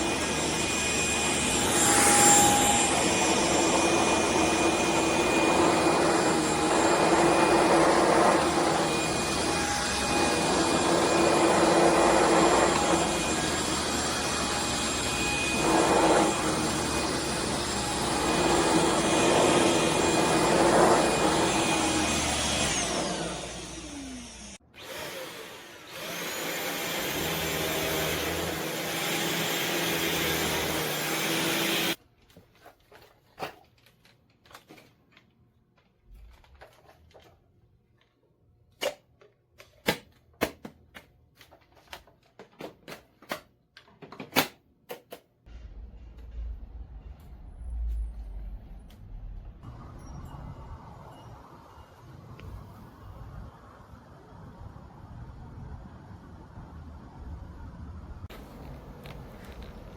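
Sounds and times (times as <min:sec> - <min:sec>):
stick vacuum motor running: 0:00.0 - 0:32.0.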